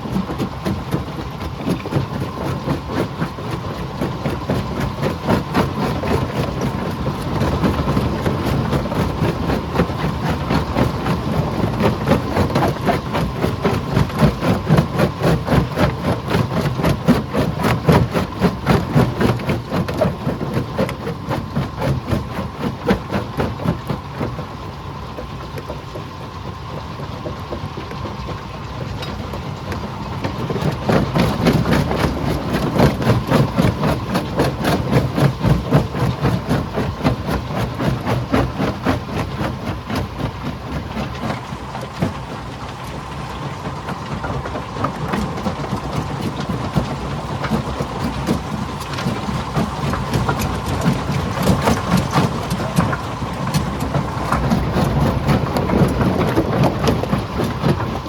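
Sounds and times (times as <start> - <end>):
rocks clattering in crusher: 27.2 - 58.0.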